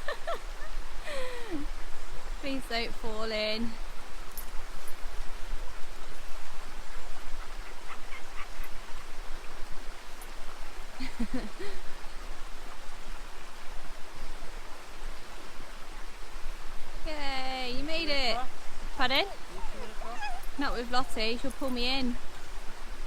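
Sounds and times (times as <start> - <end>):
waterfall and stream rushing: 0.0 - 23.0
faint voice: 17.1 - 20.7.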